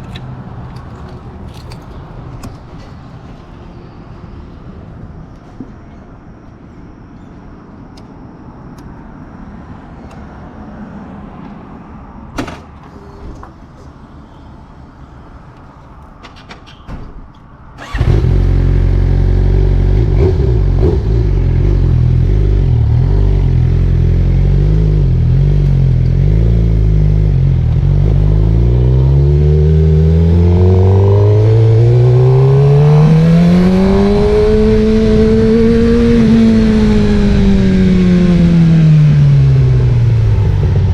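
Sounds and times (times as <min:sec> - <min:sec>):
motorcycle engine starting and revving: 0:17.8 - 0:40.9.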